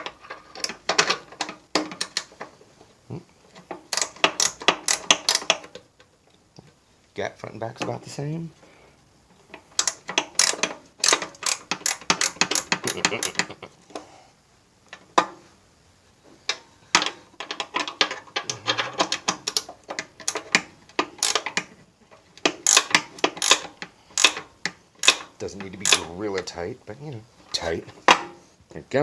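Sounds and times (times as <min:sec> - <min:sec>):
ratchet wrench clicking: 0:03.9 - 0:05.6, 0:09.8 - 0:13.4, 0:21.2 - 0:21.6, 0:22.4 - 0:26.1.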